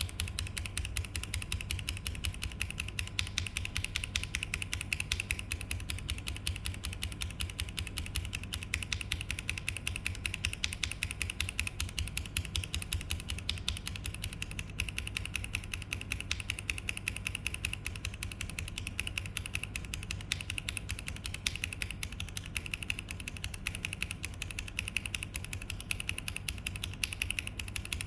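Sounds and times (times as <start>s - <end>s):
fast typing on mechanical keyboard: 0.0s - 28.0s.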